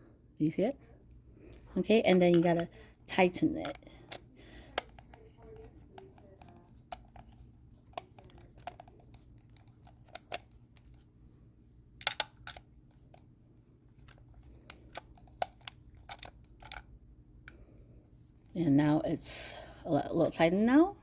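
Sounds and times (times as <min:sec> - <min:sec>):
screw being tightened clicking: 0:03.5 - 0:10.9.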